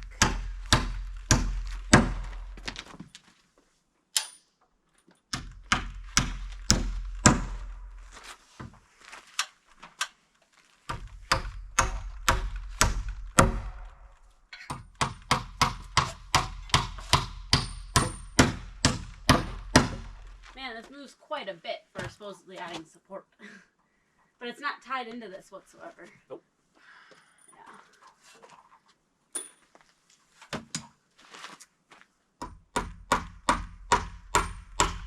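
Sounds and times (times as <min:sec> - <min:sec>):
hammer nailing wooden boards: 0:00.0 - 0:02.6, 0:05.3 - 0:07.7, 0:10.9 - 0:13.9, 0:14.7 - 0:20.4, 0:32.4 - 0:35.0.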